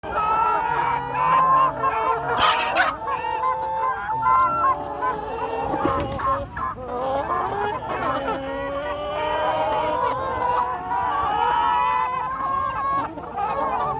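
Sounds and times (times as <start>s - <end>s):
farm birds calling: 0.0s - 13.9s.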